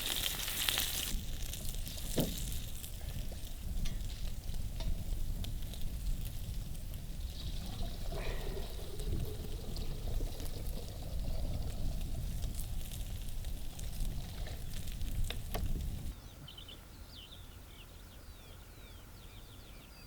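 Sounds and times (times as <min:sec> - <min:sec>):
liquid being poured: 0:07.4 - 0:11.8.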